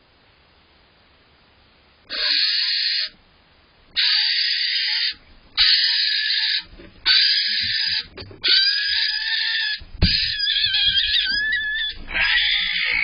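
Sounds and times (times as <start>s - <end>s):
barn owl screeching: 2.1s - 3.2s, 4.0s - 13.0s.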